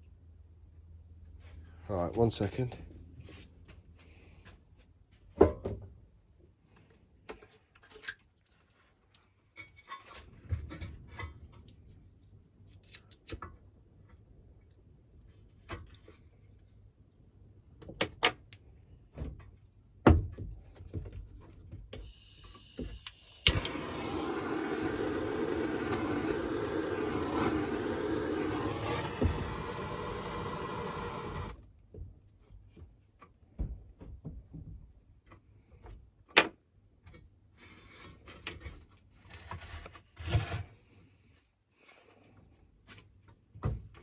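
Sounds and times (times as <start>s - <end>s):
steady hum: 22.1s - 31.6s.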